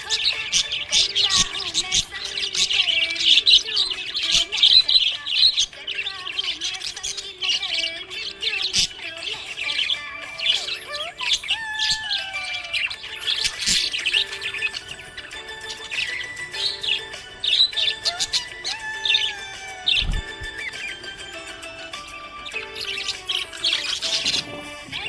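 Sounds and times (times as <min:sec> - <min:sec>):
budgerigars chirping: 0:00.0 - 0:25.0.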